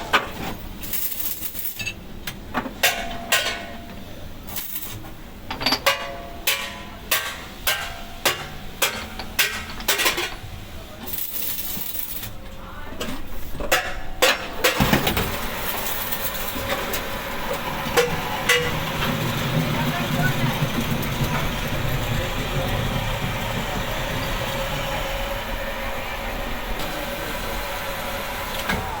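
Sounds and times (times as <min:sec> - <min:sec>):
dense mechanical noise: 0:00.0 - 0:29.0
metal clanking: 0:17.6 - 0:24.7.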